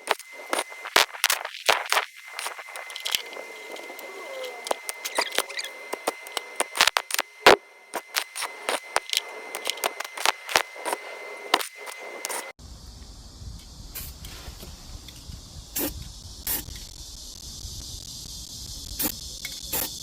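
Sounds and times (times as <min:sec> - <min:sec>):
faint steady high tone: 0:02.2 - 0:12.2.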